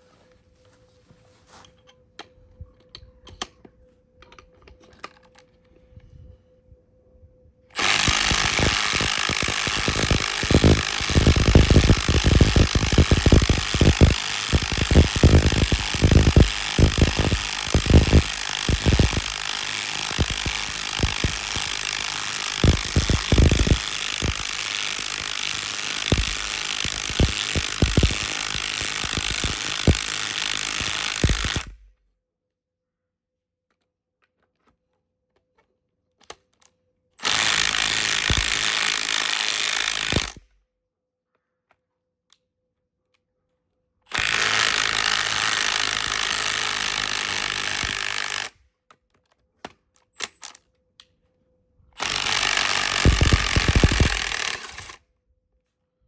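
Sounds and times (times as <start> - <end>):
impact wrench hammering: 7.8 - 31.8, 37.2 - 40.4, 44.1 - 48.5, 52.0 - 54.9.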